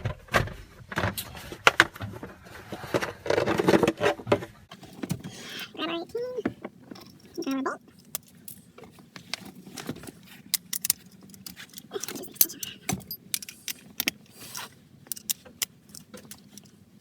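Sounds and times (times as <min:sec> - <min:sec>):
metallic clinks of tools: 0:10.6 - 0:16.8.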